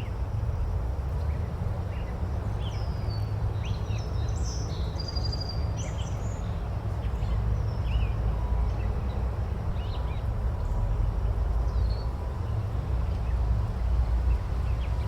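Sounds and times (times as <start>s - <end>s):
low background noise: 0.0s - 15.0s.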